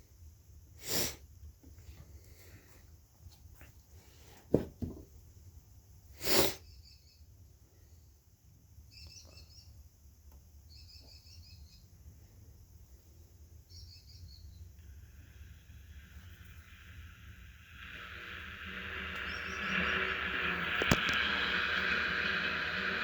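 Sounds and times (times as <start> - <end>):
loud burst of hissing: 0.8 - 1.2, 6.2 - 6.7, 14.8 - 23.0
bird trilled chirping: 8.9 - 9.8, 10.7 - 11.9, 13.7 - 14.7, 18.9 - 20.3.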